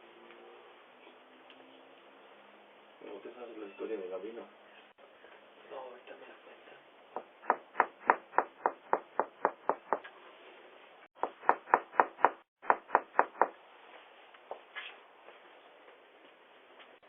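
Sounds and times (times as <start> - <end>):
knuckles knocking on door: 7.2 - 10.0.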